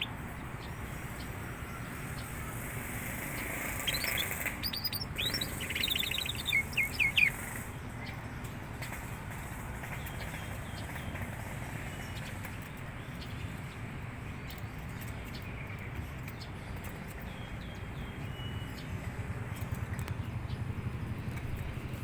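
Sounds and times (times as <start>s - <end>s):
canary chirps: 0.0s - 8.2s.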